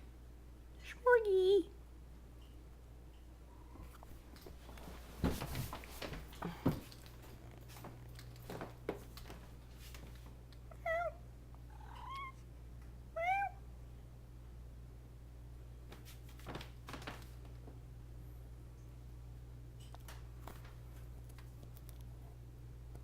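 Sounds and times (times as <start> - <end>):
cat meowing: 10.7 - 12.4, 13.2 - 13.6.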